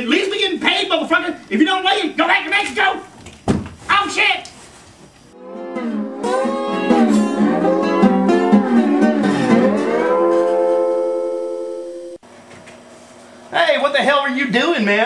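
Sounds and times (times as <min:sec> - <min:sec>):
guitar music cue: 0:05.4 - 0:12.2.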